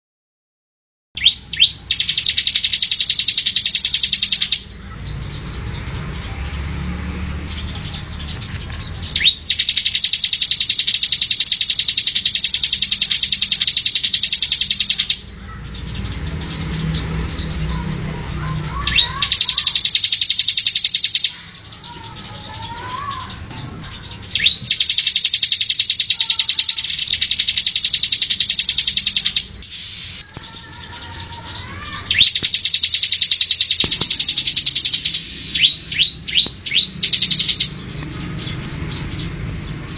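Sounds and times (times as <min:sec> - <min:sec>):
bird fast chattering trills: 0:01.2 - 0:06.9, 0:07.5 - 0:39.4
faint bird chirps: 0:07.8 - 0:15.7, 0:18.7 - 0:38.0.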